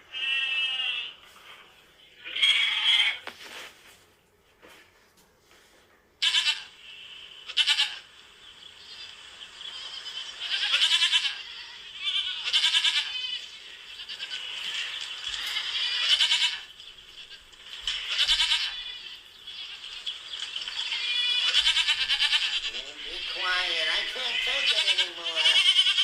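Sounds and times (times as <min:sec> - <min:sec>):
goats bleating: 0:00.1 - 0:01.3, 0:02.2 - 0:03.2, 0:06.2 - 0:06.8, 0:07.5 - 0:08.1, 0:09.8 - 0:20.0, 0:20.7 - 0:26.0.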